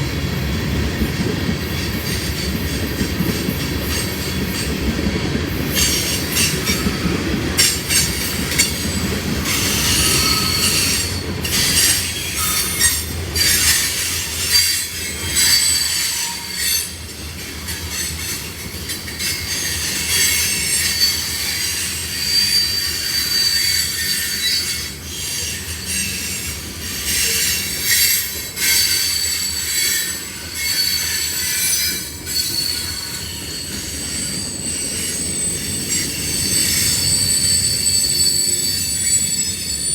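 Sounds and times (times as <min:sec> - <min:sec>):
train rumble: 0:00.0 - 0:39.9
wheels clicking over rail joints: 0:01.0 - 0:22.2
train wheels squealing: 0:01.1 - 0:39.9.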